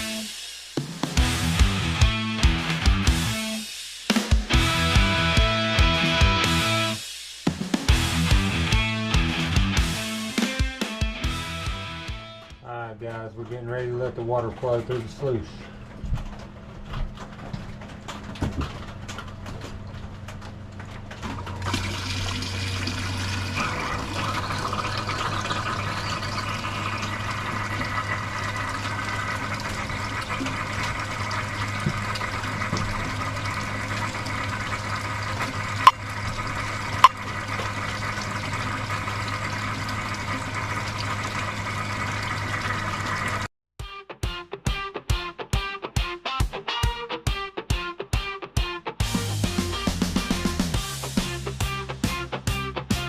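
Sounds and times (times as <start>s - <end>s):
water rushing through sluice box: 21.2s - 43.5s.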